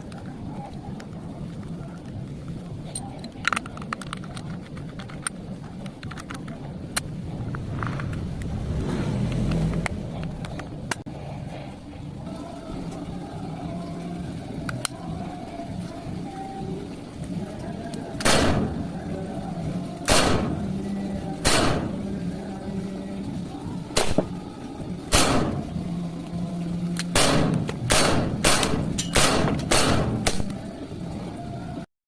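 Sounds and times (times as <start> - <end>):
airsoft pistol shots: 18.2 - 18.7, 20.1 - 20.6, 21.4 - 22.0, 24.0 - 24.3, 25.1 - 25.6, 27.2 - 30.5.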